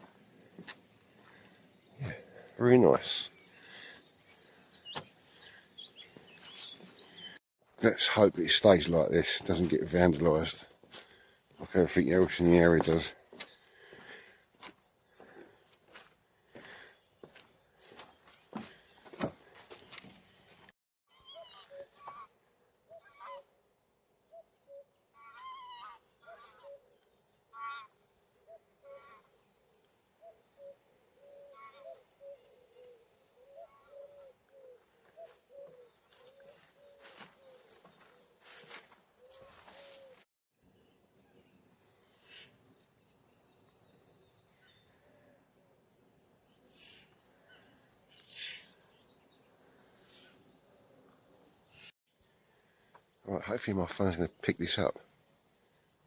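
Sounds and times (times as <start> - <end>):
birds chirping and singing: 0.0 - 7.4, 21.1 - 23.5, 24.1 - 40.2, 40.8 - 52.8
birds making short low calls: 21.2 - 23.5, 24.3 - 40.2.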